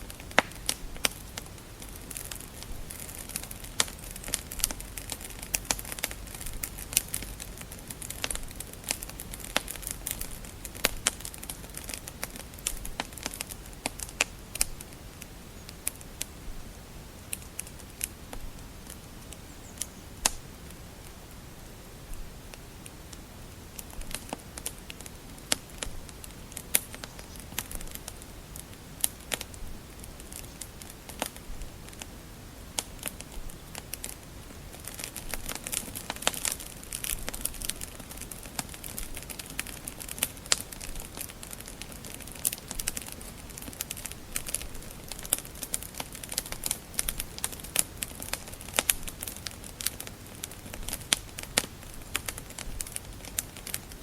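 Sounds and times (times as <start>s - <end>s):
soft steady hiss: 0.0s - 54.0s
wood fire crackling: 0.0s - 54.0s.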